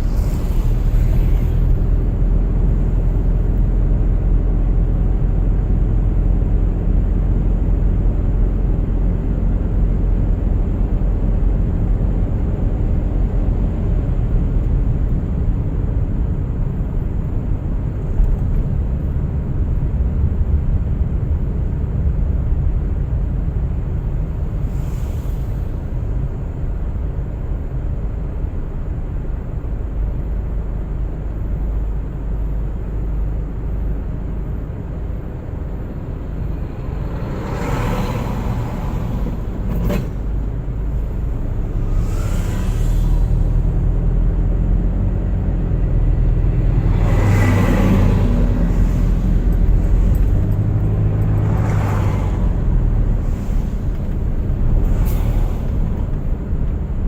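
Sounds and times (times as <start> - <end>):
tyres and engine rumble: 0.0 - 57.0
brief hiss: 24.6 - 26.2, 36.8 - 43.8, 53.2 - 56.5.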